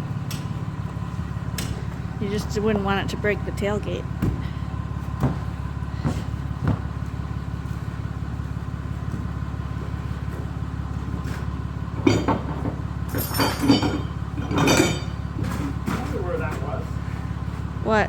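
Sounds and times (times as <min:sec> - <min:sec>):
truck engine idling: 0:00.0 - 0:18.0
metal equipment clattering: 0:12.0 - 0:16.6.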